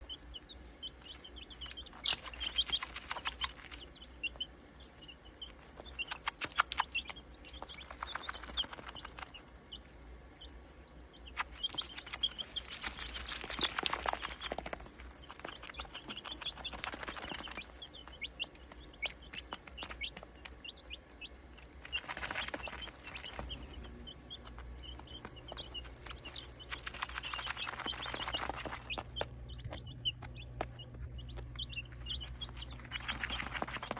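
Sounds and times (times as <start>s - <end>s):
chicks peeping: 0.0s - 33.9s
steady low hum: 20.4s - 33.9s.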